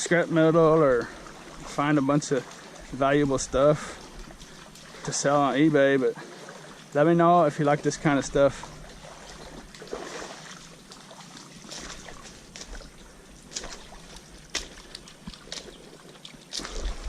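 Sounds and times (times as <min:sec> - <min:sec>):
creek water sloshing: 0:00.0 - 0:17.0
sharp splashes: 0:00.8 - 0:07.0, 0:08.2 - 0:17.0.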